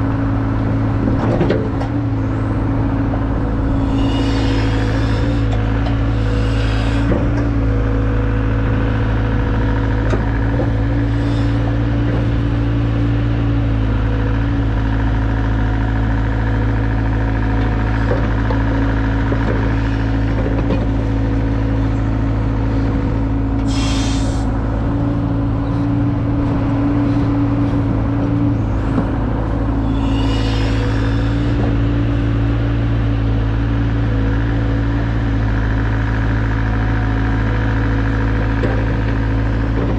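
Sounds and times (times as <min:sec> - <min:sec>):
excavator diesel engine running: 0:00.0 - 0:39.9
short bursts of hissing: 0:23.7 - 0:24.4.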